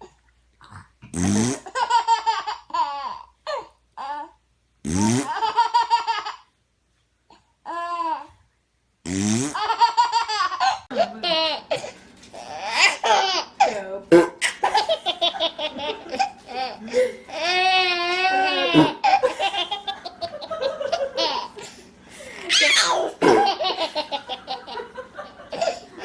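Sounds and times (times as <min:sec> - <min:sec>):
baby laughing: 0:01.6 - 0:04.3, 0:05.2 - 0:06.5, 0:09.6 - 0:13.8, 0:14.4 - 0:21.8, 0:22.4 - 0:26.0
baby squealing: 0:22.5 - 0:23.4.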